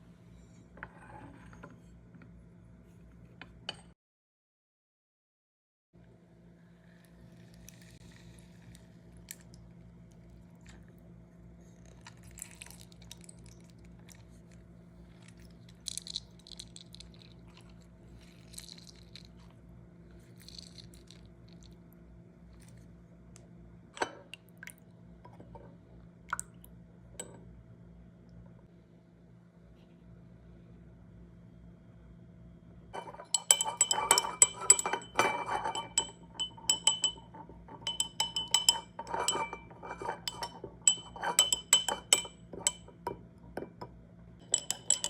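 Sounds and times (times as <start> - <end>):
steady low hum: 19.2 - 45.0.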